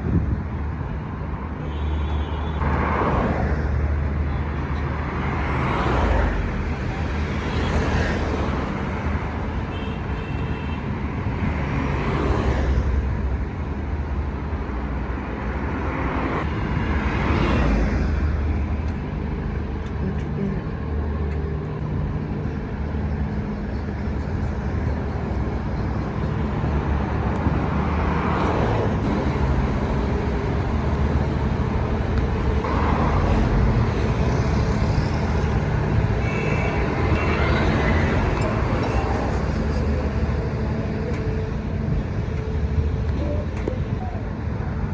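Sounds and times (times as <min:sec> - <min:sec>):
road traffic rumble: 0:00.0 - 0:44.9
vehicles passing: 0:00.0 - 0:44.9.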